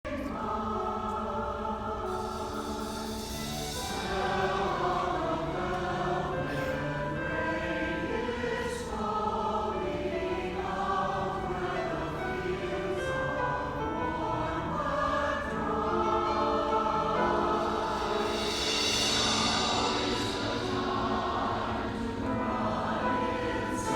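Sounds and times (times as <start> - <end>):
mixed choir singing: 0.0 - 23.9.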